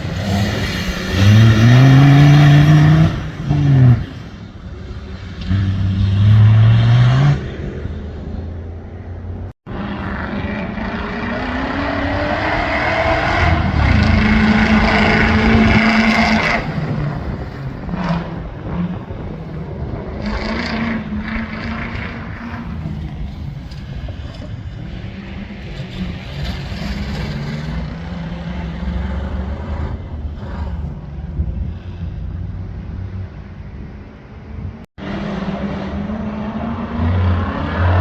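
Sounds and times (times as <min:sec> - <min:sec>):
racing car engine revving: 0:00.0 - 0:38.0.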